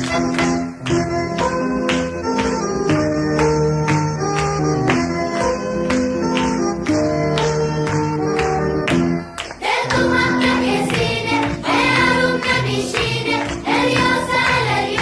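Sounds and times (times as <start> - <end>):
instrumental music with percussion: 0.0 - 15.0
voices singing together: 9.6 - 15.0.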